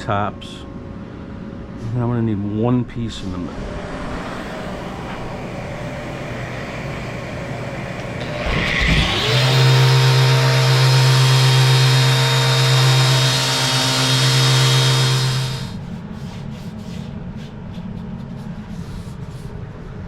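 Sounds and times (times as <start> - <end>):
power saw motor humming: 7.8 - 15.8.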